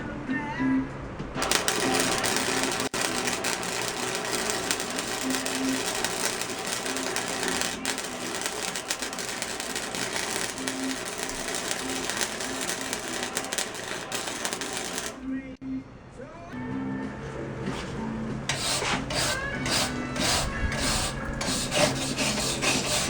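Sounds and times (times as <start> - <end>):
welding arc crackling: 1.4 - 15.2, 18.5 - 23.0.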